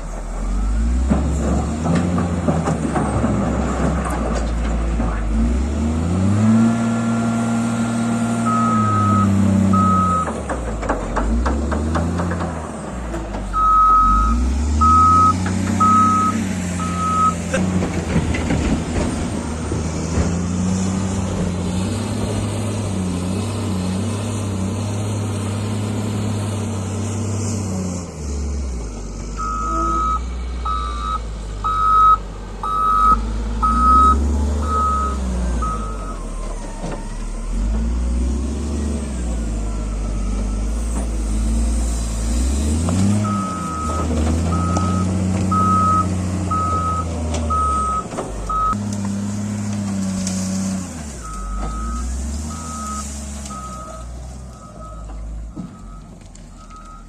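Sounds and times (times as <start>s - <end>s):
diesel engine revving: 0.0s - 57.0s
clattering knocks: 1.0s - 5.4s, 10.2s - 13.7s, 17.6s - 20.6s
reversing alarm beeping: 8.4s - 10.3s, 13.6s - 17.4s, 29.4s - 36.4s, 43.1s - 48.8s, 51.2s - 57.0s.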